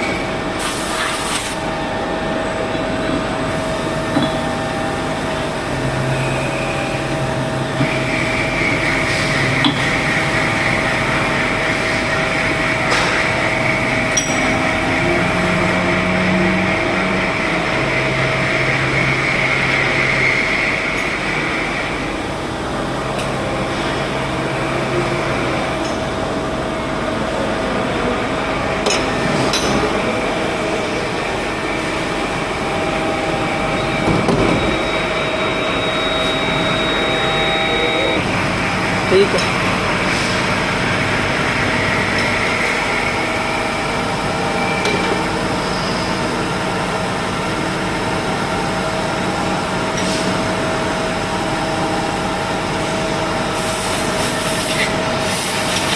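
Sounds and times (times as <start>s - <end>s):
high machine whine: 0.0s - 55.9s
machining centre running: 0.0s - 55.9s.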